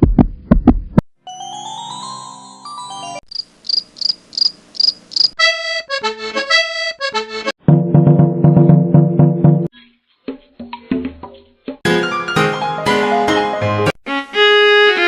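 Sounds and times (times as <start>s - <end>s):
high cricket-like chirps: 3.3s - 5.4s.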